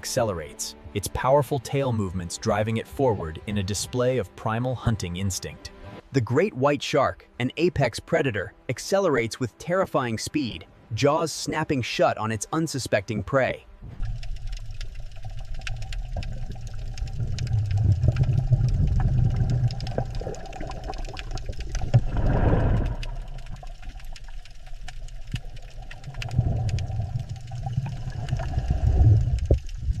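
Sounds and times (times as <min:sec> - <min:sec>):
faint crackles: 0:13.8 - 0:30.0
underwater low rumble: 0:13.8 - 0:30.0.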